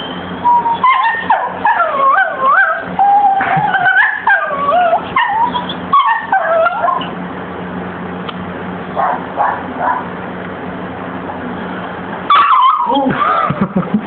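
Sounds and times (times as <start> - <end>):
dog whining: 0.0 - 7.2, 12.3 - 13.5
dog yelping: 0.0 - 7.2, 9.0 - 10.2, 12.3 - 13.5
steady low hum: 0.0 - 14.0.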